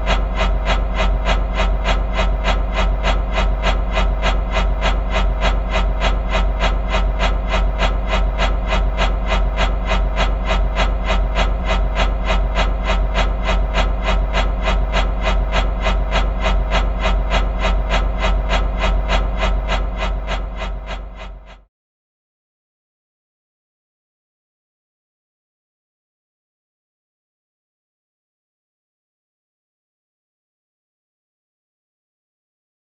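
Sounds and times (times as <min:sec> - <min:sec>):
fan blades whooshing: 0:00.0 - 0:21.4
low hum: 0:00.0 - 0:21.6.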